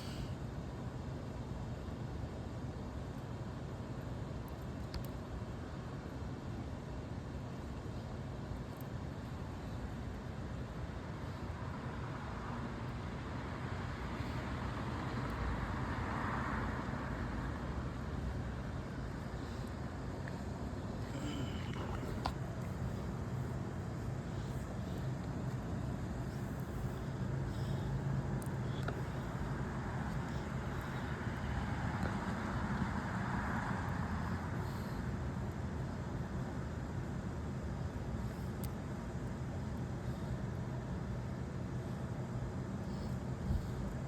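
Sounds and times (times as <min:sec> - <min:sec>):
road traffic noise: 0:05.3 - 0:44.0.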